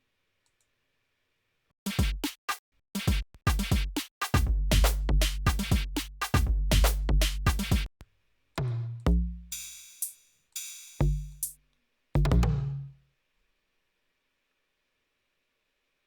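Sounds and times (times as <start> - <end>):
deep kick drum thumps: 2.0 - 2.2, 3.1 - 7.9, 12.2 - 12.7.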